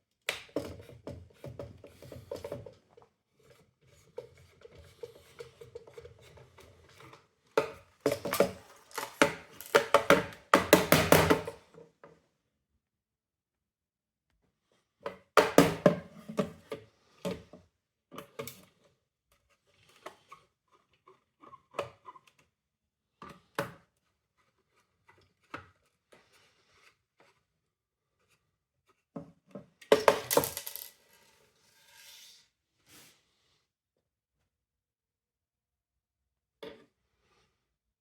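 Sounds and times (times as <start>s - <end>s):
plastic parts and screws clattering: 8.1s - 10.4s, 29.9s - 31.3s.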